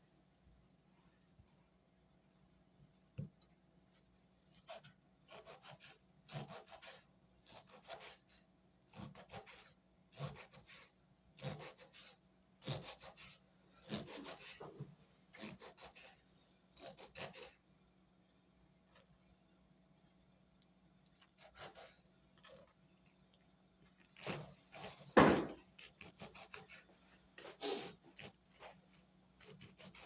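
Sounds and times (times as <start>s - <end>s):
soft knock: 25.2s - 25.6s.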